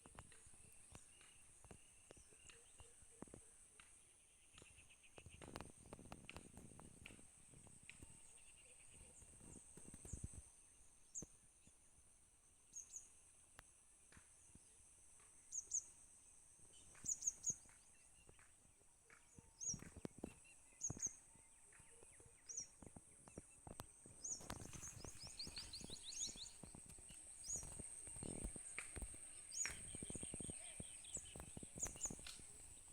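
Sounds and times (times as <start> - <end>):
bird chirps: 19.1 - 32.9.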